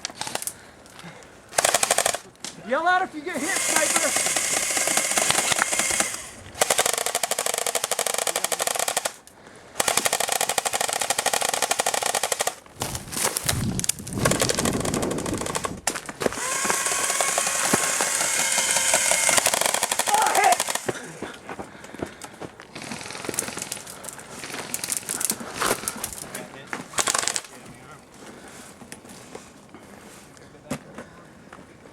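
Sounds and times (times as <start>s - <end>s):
airsoft guns firing bursts: 1.5s - 2.3s, 3.3s - 12.6s, 13.4s - 21.2s, 22.7s - 25.2s, 27.0s - 27.5s.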